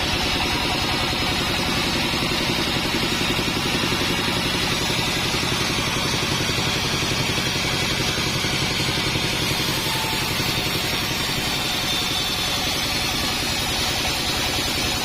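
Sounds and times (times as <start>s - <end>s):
band sawmill running: 0.0s - 15.0s.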